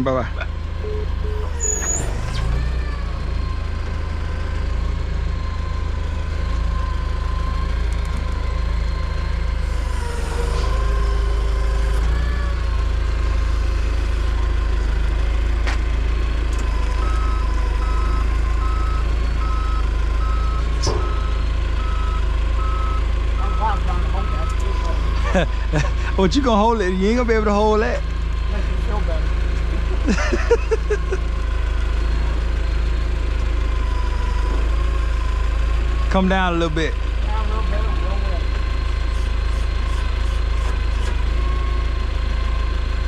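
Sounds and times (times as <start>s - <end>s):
heavy diesel engine running: 0.0s - 43.0s
backup alarm beeping: 0.8s - 2.4s.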